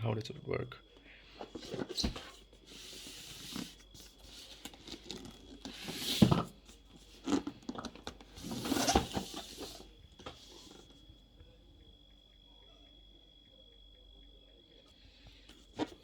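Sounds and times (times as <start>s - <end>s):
cardboard and plastic scraping: 1.4s - 11.0s, 15.6s - 16.0s.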